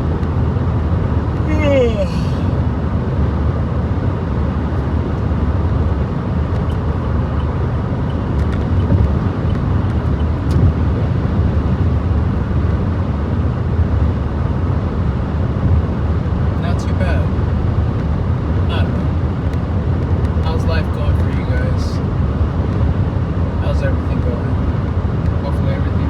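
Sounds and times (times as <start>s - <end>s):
wind noise: 0.0s - 14.2s
road noise inside car: 0.0s - 26.0s.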